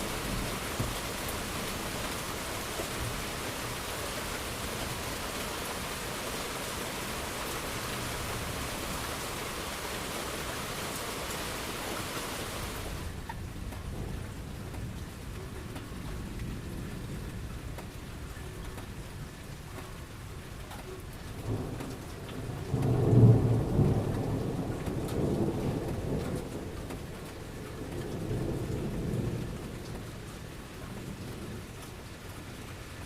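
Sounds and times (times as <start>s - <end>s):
low rumble of thunder: 0.0s - 6.0s, 12.8s - 18.3s, 21.3s - 32.2s
heavy rain: 0.0s - 33.0s.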